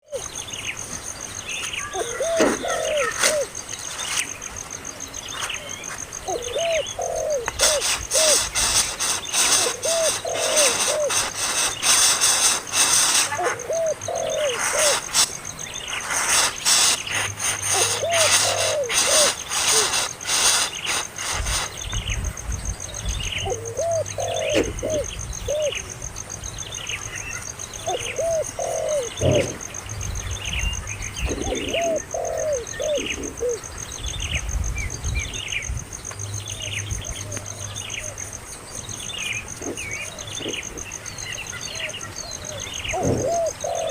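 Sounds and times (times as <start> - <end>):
bird cooing: 0.0 - 0.3, 1.9 - 3.6, 6.2 - 8.5, 9.4 - 11.6, 13.1 - 15.0, 17.6 - 20.0, 23.4 - 25.9, 27.8 - 29.7, 31.2 - 33.6, 39.5 - 40.9, 41.8 - 43.9
high falling bird chirps: 0.0 - 25.9, 26.5 - 35.7, 36.3 - 43.9.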